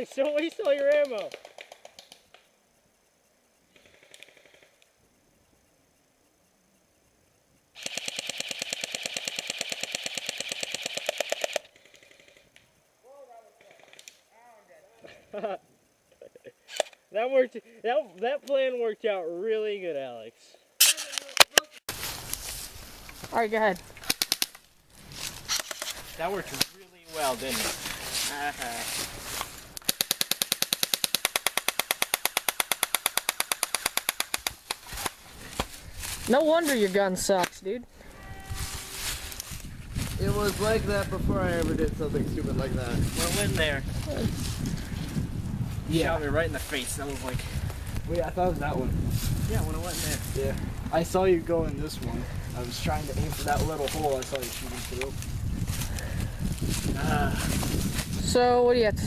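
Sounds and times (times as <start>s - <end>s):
airsoft gun full-auto burst: 7.8s - 12.1s, 29.8s - 34.5s.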